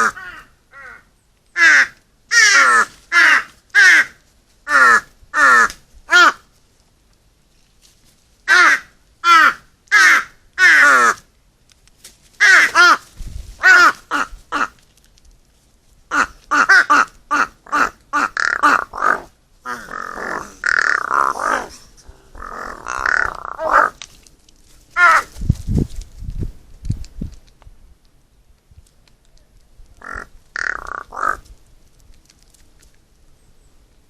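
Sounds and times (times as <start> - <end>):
crows cawing: 0.0 - 6.5, 8.5 - 11.2, 12.4 - 14.8, 16.1 - 24.0, 25.0 - 25.3, 30.0 - 31.4.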